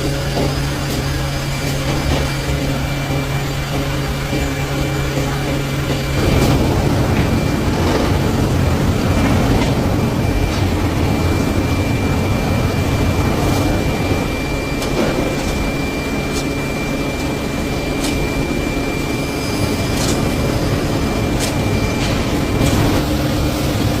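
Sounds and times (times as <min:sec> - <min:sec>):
mechanical running rumble: 0:00.0 - 0:24.0
thin high whine: 0:00.0 - 0:24.0.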